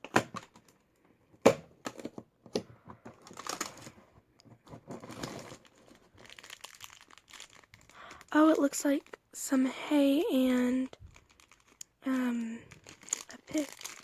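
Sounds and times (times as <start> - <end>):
packaging tearing and crinkling: 3.2 - 4.0, 4.8 - 8.6, 11.0 - 14.0.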